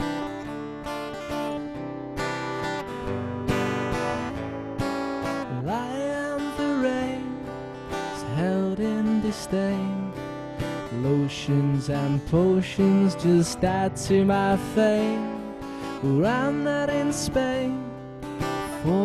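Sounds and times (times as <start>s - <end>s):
acoustic guitar strumming: 0.0s - 19.0s
man singing: 5.4s - 19.0s.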